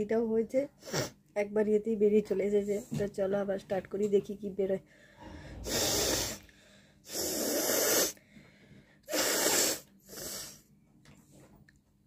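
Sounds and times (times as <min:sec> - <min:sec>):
person blowing nose: 0:00.8 - 0:01.2, 0:05.2 - 0:06.5, 0:07.1 - 0:08.2, 0:09.1 - 0:10.6.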